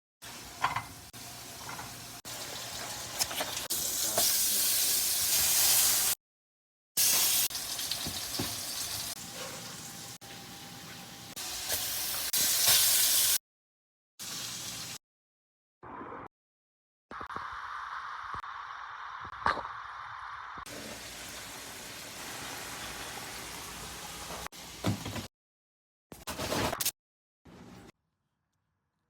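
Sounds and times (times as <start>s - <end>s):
food sizzling in frying pans: 0.2s - 6.2s, 7.0s - 13.4s, 14.2s - 15.0s, 17.4s - 24.8s.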